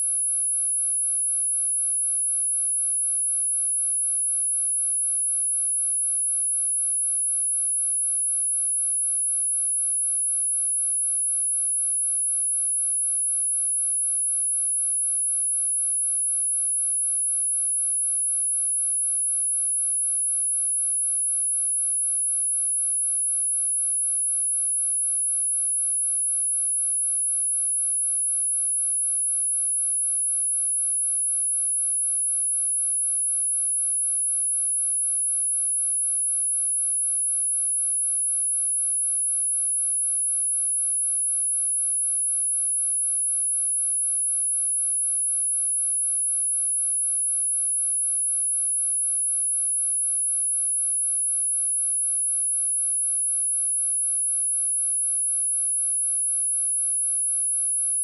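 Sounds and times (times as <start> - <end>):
high-pitched sine test tone: 49.6 - 58.0.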